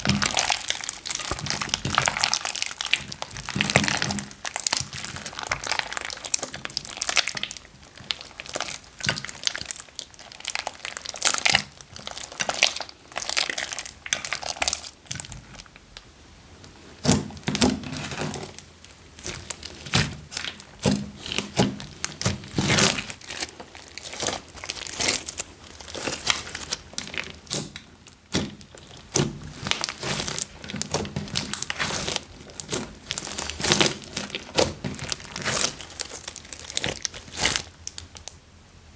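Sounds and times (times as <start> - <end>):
plastic bags crinkling: 17.2 - 38.3.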